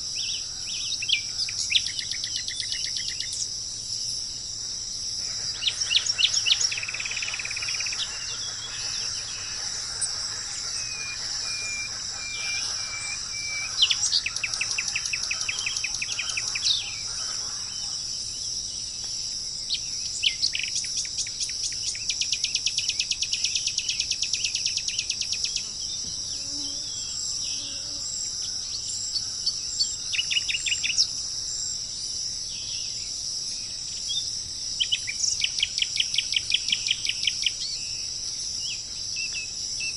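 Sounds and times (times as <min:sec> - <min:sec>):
insect chorus: 0:00.0 - 0:39.9
birds trilling and whistling: 0:05.2 - 0:18.8.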